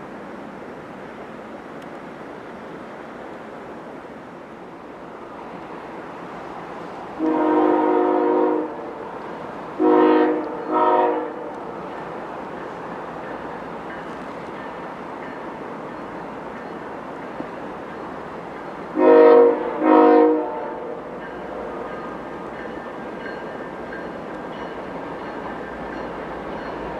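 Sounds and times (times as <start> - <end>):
steady hiss: 0.0 - 7.8
locomotive air horn blasts: 7.2 - 9.1, 9.8 - 11.7, 19.0 - 21.8.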